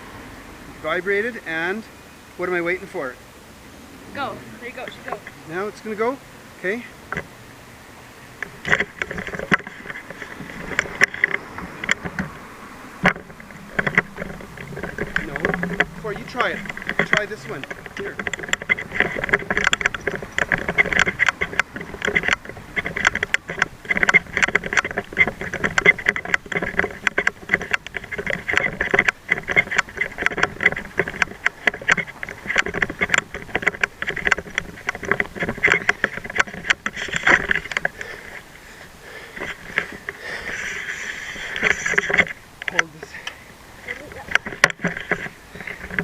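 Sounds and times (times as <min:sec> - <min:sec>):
wind on microphone: 0:08.4 - 0:38.6
scooter wheels rattling on pavement: 0:08.4 - 0:46.0.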